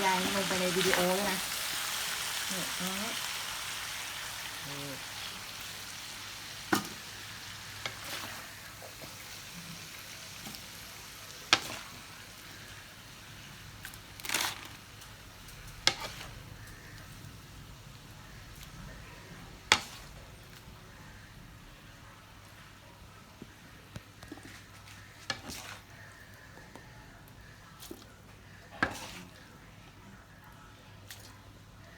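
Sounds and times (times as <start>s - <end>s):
food sizzling in a pot: 0.0s - 18.8s, 19.5s - 20.6s
scraping stir: 24.2s - 25.9s, 28.8s - 29.4s.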